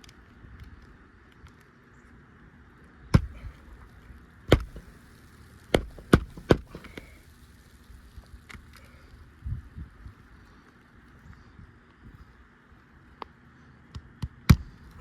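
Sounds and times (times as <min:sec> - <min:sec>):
nails driven into roof shingles: 0:03.1 - 0:03.9, 0:04.5 - 0:07.2.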